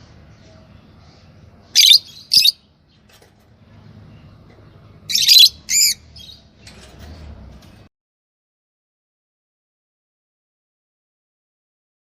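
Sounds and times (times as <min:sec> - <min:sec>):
low background hum: 0:00.0 - 0:07.9
lovebirds chirping: 0:00.3 - 0:07.3.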